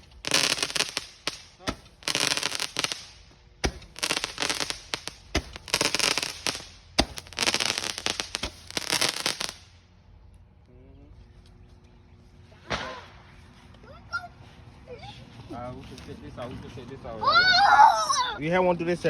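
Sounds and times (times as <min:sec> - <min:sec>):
fireworks crackling and popping: 0:00.0 - 0:09.9.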